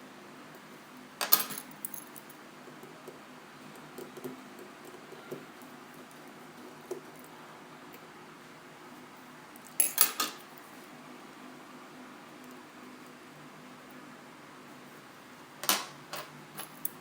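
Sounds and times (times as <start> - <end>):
metal parts clinking: 1.2 - 2.2, 9.7 - 10.4.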